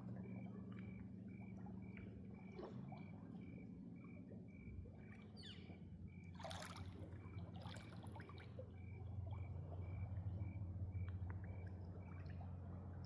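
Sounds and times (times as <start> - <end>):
steady low hum: 0.0 - 13.0
faint high chirp: 5.0 - 5.8
water trickling and dripping: 6.2 - 13.0.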